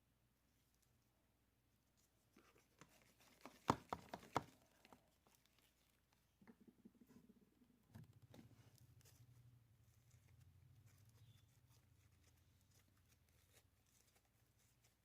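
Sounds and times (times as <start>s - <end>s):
faint low hum: 4.7s - 15.0s.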